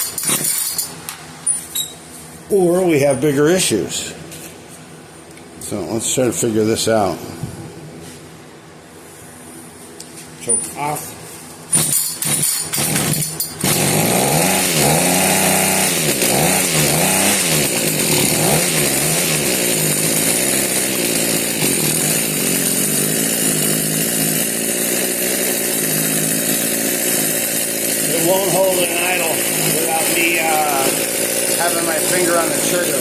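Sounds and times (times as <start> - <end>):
hedge trimmer engine revving: 0.0 - 0.8, 11.7 - 33.0
pull-starter cranking: 0.0 - 0.9, 11.7 - 33.0.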